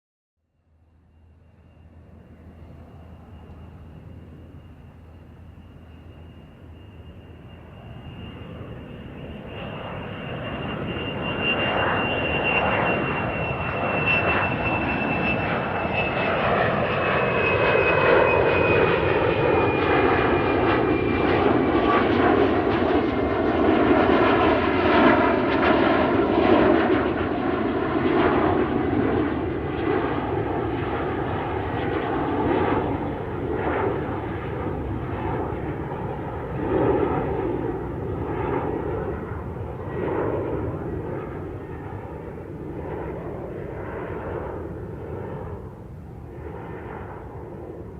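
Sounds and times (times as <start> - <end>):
airplane engine roar: 0.5 - 47.9
high engine whine: 0.5 - 47.9.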